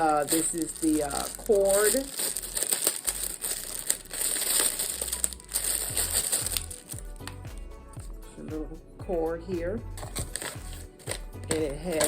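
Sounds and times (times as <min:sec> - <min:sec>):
plastic packaging crinkling: 0:00.0 - 0:07.4, 0:10.0 - 0:12.0.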